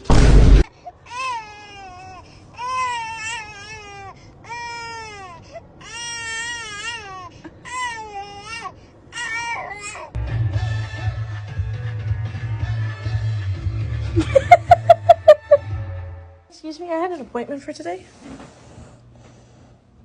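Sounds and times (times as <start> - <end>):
loud knock: 0.0 - 0.6
music: 10.2 - 16.5.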